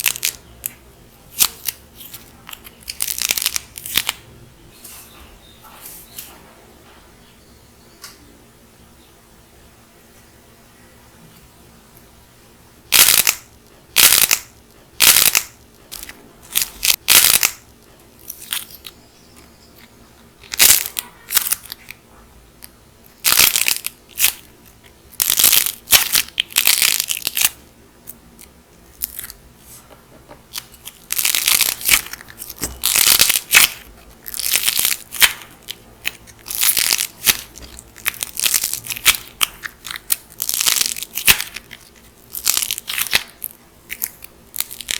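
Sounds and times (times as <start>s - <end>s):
dried clay cracking and crumbling: 30.4s - 44.9s.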